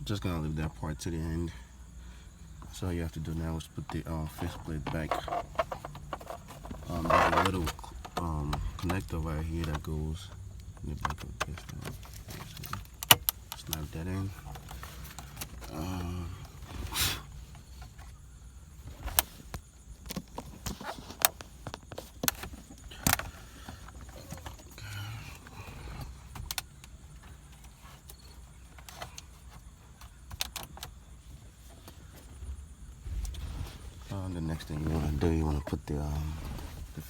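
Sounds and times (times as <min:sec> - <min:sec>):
plastic trim clicking and rattling: 0:04.3 - 0:15.7, 0:19.0 - 0:24.6, 0:26.3 - 0:30.9.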